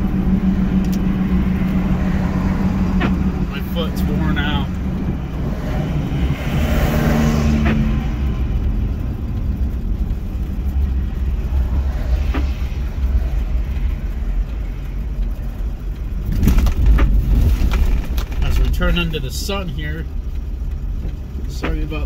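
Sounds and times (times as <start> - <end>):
truck engine and road rumble: 0.0 - 22.0.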